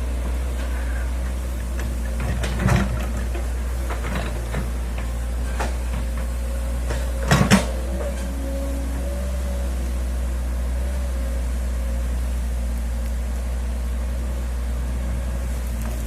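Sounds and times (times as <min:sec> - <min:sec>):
excavator engine drone: 0:00.0 - 0:16.0
excavator clunks: 0:00.1 - 0:10.0.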